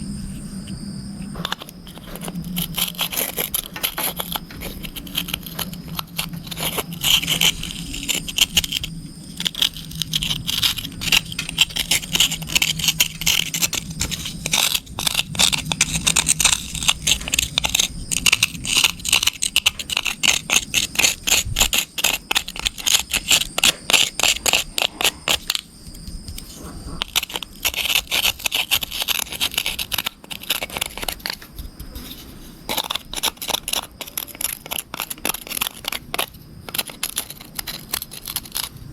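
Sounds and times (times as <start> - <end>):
scraping mud off toy car: 1.3 - 38.9.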